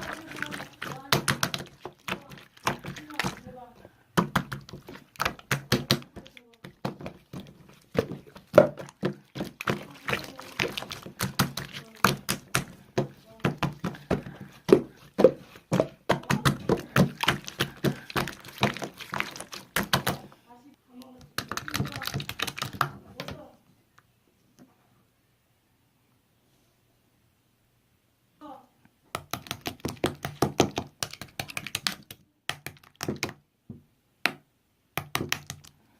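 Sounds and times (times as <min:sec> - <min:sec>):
slime pressed by hand: 0:04.2 - 0:20.3.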